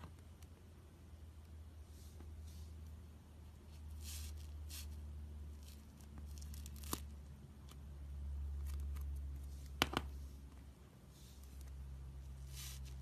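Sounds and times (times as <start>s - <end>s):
crusty slime crackling and tearing: 5.5s - 7.2s.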